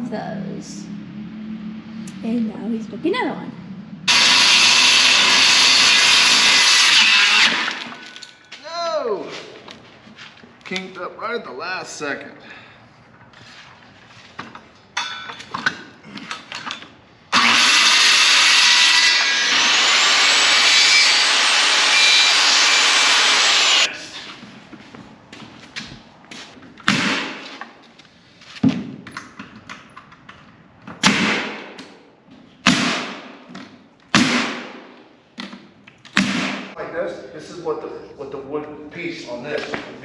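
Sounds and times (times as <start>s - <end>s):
power tool running: 4.1s - 8.2s, 17.3s - 23.9s
sharp knocks: 36.2s - 36.8s.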